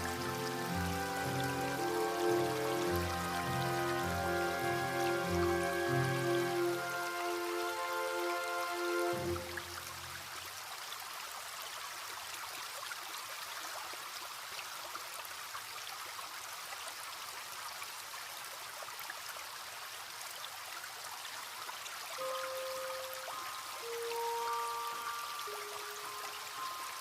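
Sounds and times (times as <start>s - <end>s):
gentle music notes: 0.0s - 10.3s, 22.2s - 27.0s
stream water trickling: 0.0s - 27.0s.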